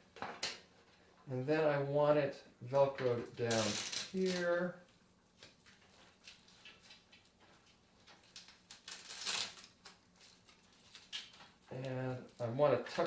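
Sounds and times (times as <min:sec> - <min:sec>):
cables rustling and clicking: 0:03.0 - 0:13.0
velcro strap rasp: 0:03.5 - 0:04.5, 0:08.4 - 0:11.3.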